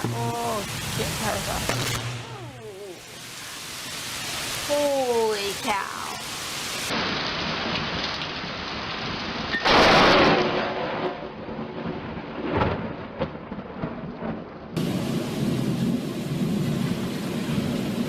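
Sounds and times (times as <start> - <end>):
rain hiss: 0.0 - 10.2, 14.8 - 18.0
thunder: 6.9 - 18.0
loud thunderclap: 9.0 - 18.0.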